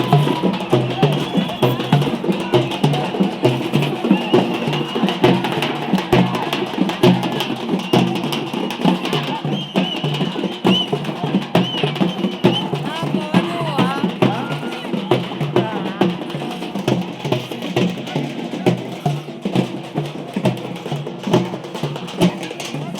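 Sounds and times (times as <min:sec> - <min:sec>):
crowd voices: 0:00.0 - 0:22.9
drums beating fast: 0:00.0 - 0:22.9.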